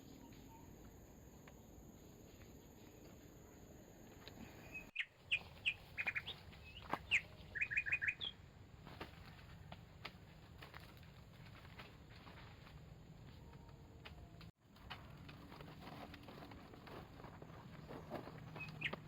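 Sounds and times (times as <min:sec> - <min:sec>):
bird chirps and whistles: 0:04.6 - 0:08.4.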